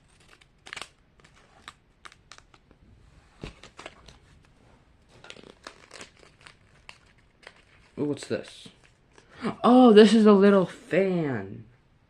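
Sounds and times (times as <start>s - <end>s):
plastic packet crinkling: 5.1s - 9.3s.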